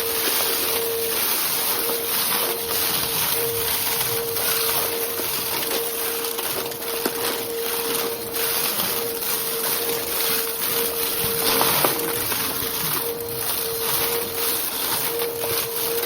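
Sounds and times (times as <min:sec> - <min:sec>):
vacuum cleaner running: 0:00.0 - 0:16.0.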